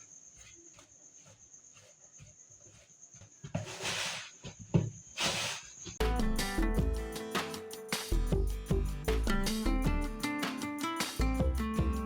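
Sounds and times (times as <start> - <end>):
music with plucked strings: 6.0 - 12.0.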